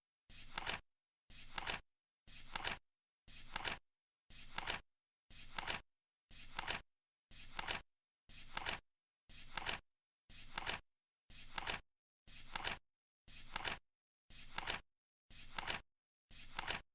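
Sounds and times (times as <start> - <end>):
flip clock card flipping: 0.4 - 0.8, 1.4 - 1.8, 2.4 - 2.8, 3.4 - 3.8, 4.4 - 4.8, 5.4 - 5.8, 6.5 - 6.8, 7.5 - 7.8, 8.5 - 8.8, 9.5 - 9.8, 10.5 - 10.8.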